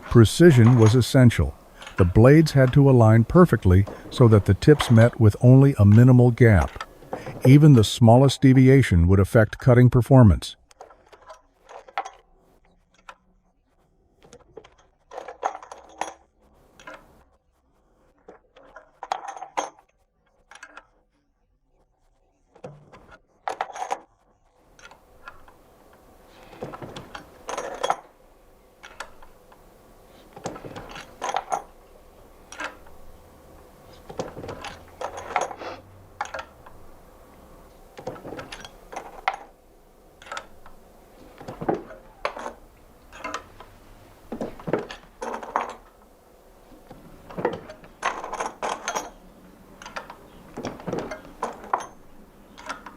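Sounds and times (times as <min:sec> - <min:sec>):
metal tools clinking: 0:00.0 - 0:07.4, 0:26.6 - 0:28.1, 0:30.4 - 0:31.8, 0:33.9 - 0:35.6, 0:38.0 - 0:39.5, 0:41.4 - 0:43.7, 0:44.3 - 0:45.9, 0:47.3 - 0:49.2, 0:49.8 - 0:52.9
low machine hum: 0:00.0 - 0:10.6.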